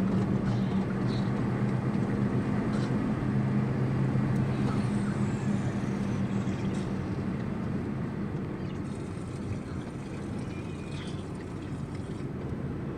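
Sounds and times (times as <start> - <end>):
vehicle engine rumbling: 0.0 - 12.9.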